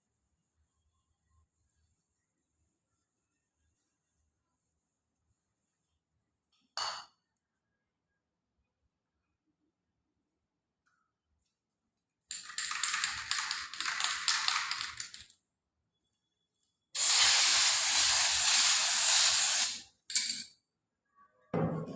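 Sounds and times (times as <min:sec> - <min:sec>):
aerosol can spraying: 0:17.0 - 0:19.9.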